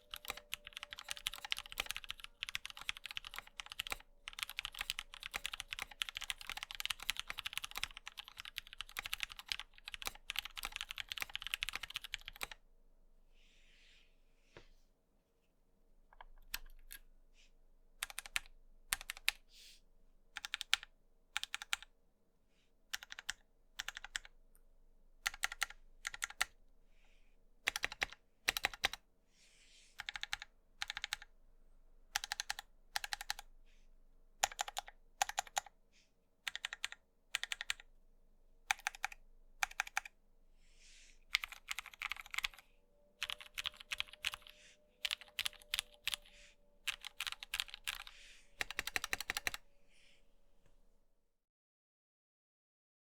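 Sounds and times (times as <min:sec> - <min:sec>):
mechanical keyboard typing: 0:00.0 - 0:12.6, 0:16.1 - 0:17.0, 0:18.0 - 0:19.4, 0:20.4 - 0:21.9, 0:22.9 - 0:24.3, 0:25.2 - 0:26.6, 0:27.7 - 0:29.0, 0:30.0 - 0:31.3, 0:32.1 - 0:33.5, 0:34.4 - 0:35.7, 0:36.5 - 0:37.9, 0:38.7 - 0:40.1, 0:41.3 - 0:42.6, 0:43.2 - 0:49.6.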